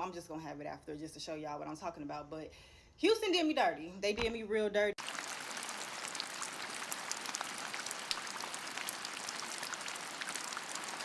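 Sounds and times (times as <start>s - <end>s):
rain pouring: 5.0s - 11.0s
raindrop hits: 5.0s - 11.0s.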